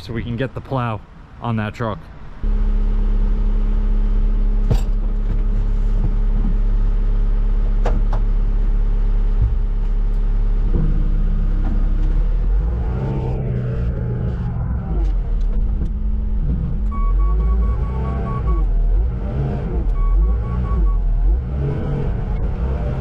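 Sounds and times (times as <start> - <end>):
diesel engine idling: 0.0 - 12.8.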